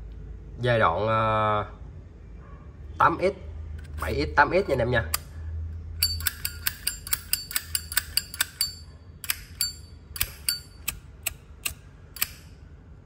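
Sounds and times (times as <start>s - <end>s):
lighter lid clicking open and shut: 6.0s - 12.5s.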